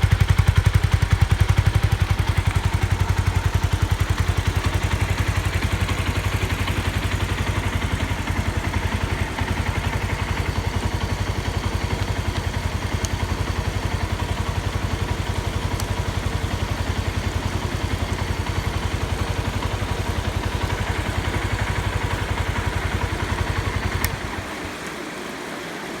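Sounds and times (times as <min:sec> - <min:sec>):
single-cylinder engine idling: 0:00.0 - 0:25.2
click: 0:08.8 - 0:14.2, 0:15.6 - 0:16.3, 0:22.0 - 0:25.0.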